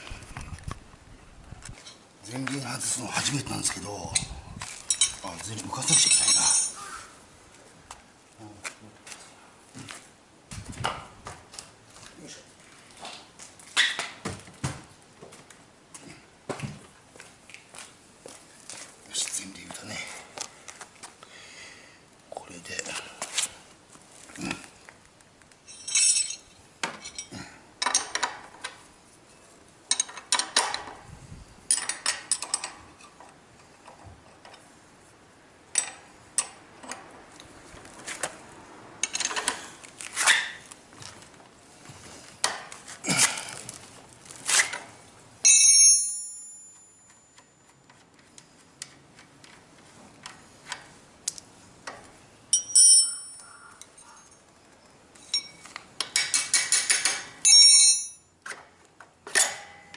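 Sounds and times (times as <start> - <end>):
ringing metal clinks: 25.7 - 27.3, 45.4 - 47.6, 52.5 - 54.4, 55.2 - 55.7, 57.4 - 58.3
metal tools clicking and knocking: 25.7 - 28.5, 29.9 - 30.9, 31.7 - 33.2, 39.0 - 39.6, 52.5 - 54.4, 55.2 - 58.2.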